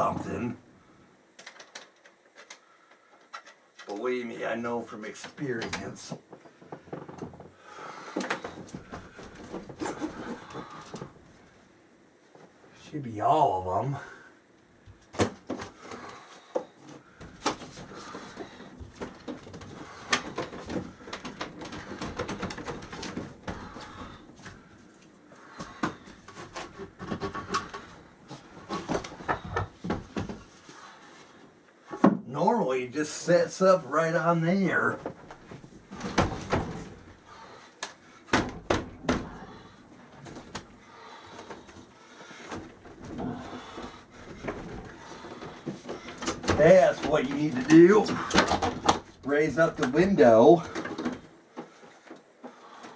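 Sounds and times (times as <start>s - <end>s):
handling knocks and clicks: 14.9s - 30.6s, 34.9s - 52.9s.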